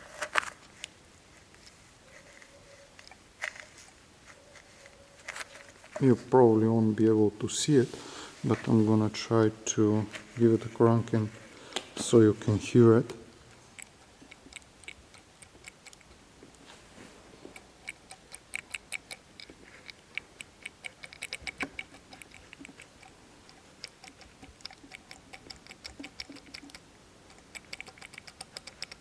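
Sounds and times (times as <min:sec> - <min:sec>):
turbocharger shaft clicking: 0:17.5 - 0:29.0.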